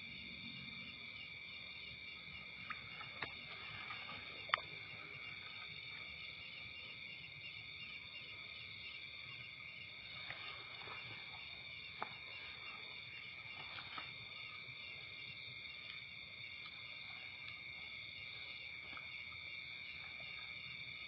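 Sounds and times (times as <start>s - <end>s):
crickets trilling: 0.0s - 21.0s
faint clicks: 2.6s - 5.0s.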